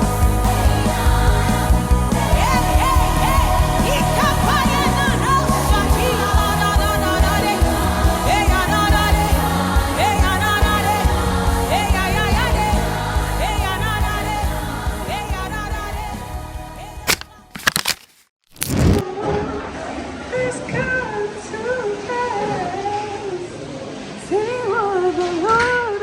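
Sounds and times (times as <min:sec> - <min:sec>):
music with singing voice: 0:00.0 - 0:17.5.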